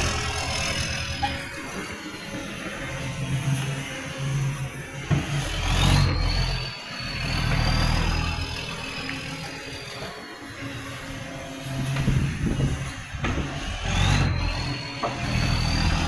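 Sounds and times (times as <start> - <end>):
diesel engine revving: 0.0 - 3.6, 5.2 - 10.1, 11.7 - 16.0
high whine: 0.0 - 16.0.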